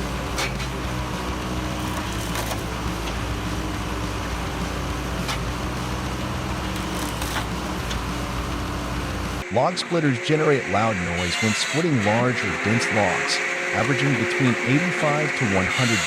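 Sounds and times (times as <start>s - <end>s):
log splitter running: 0.0s - 9.4s
wood cracking apart: 1.8s - 3.2s, 6.4s - 8.1s.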